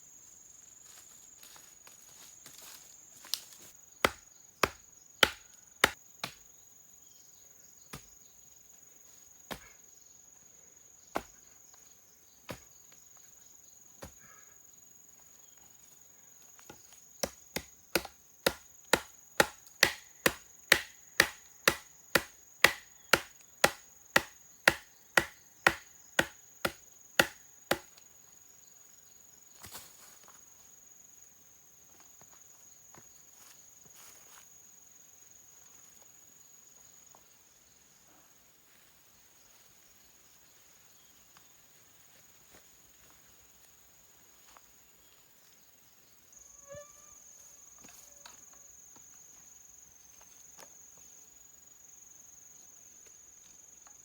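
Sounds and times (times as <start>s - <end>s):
high insect trill: 0.0s - 54.0s
sharp chopping strikes: 4.0s - 6.4s, 17.2s - 27.9s.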